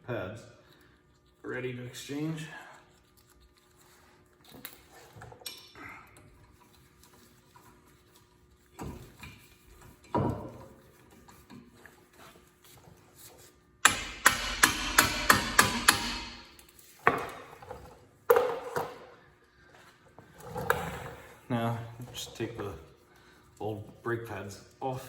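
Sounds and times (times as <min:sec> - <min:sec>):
metal-on-metal strikes: 0:13.8 - 0:16.6.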